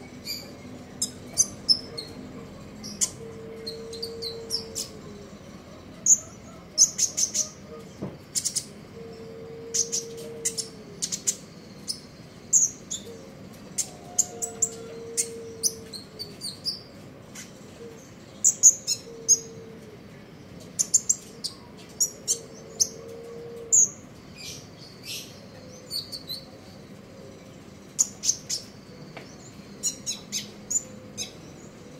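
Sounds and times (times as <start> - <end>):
low steady hoot: 0.0 - 16.8, 17.4 - 31.9
songbird twittering: 20.7 - 31.9.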